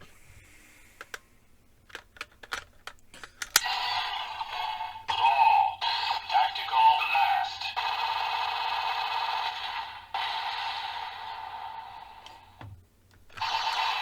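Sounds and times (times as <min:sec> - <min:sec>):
sharp plastic clicks: 0:01.0 - 0:03.8
toy electronic sound effects: 0:03.5 - 0:07.8.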